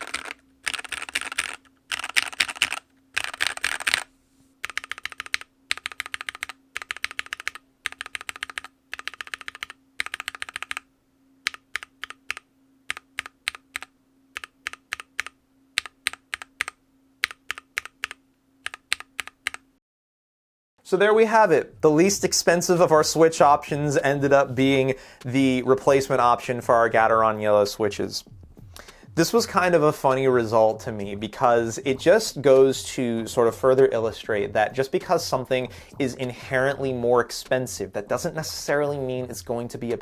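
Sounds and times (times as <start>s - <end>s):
mechanical keyboard typing: 0.0s - 19.7s.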